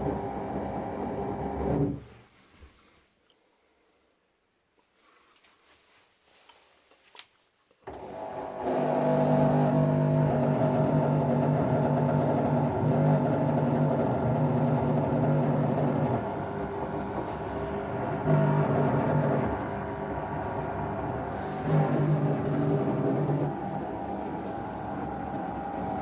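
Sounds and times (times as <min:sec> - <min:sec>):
washer-dryer humming: 0:07.9 - 0:26.0.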